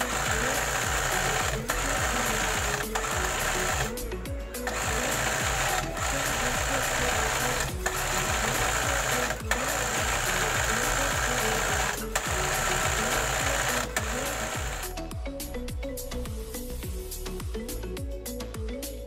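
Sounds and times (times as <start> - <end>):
electric sewing machine stitching: 0.0 - 15.0
background music with steady beat: 0.0 - 19.0.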